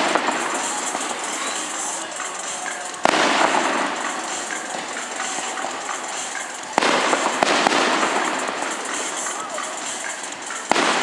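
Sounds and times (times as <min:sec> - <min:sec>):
fireworks bangs: 0:00.0 - 0:11.0
fireworks crackling: 0:00.0 - 0:11.0.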